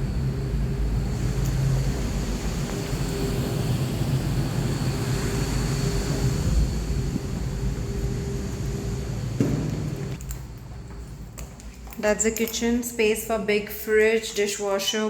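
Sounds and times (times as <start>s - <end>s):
faint steady hum: 0.0s - 15.0s
low city rumble: 0.0s - 15.0s
sharp knock: 9.4s - 10.0s.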